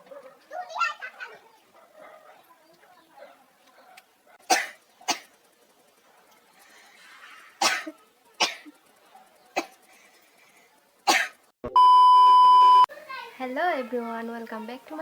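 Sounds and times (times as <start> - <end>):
person coughing hard: 4.5 - 5.3, 7.6 - 8.7, 11.1 - 11.4.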